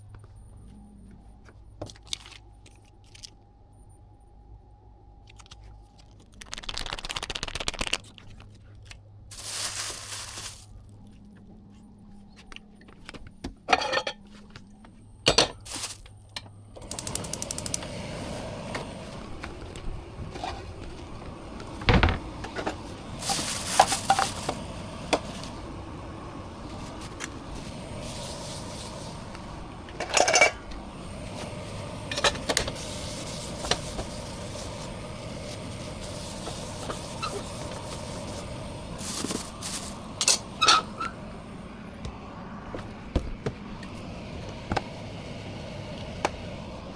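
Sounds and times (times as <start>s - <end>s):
utensils dishes and pans clinking: 13.7s - 14.3s
steady background hiss: 15.0s - 46.9s.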